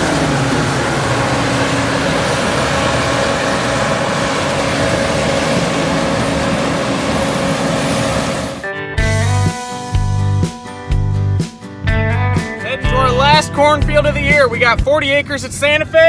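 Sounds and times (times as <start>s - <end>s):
vehicle engine humming: 0.0s - 8.7s.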